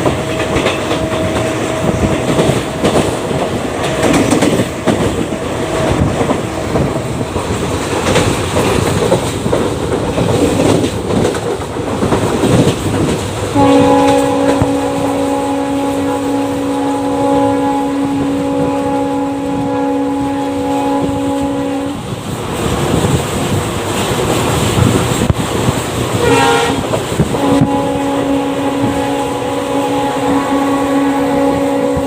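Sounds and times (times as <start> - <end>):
train rumble and wheel clatter: 0.0 - 32.0
locomotive horn blast: 13.5 - 22.2, 26.1 - 32.0.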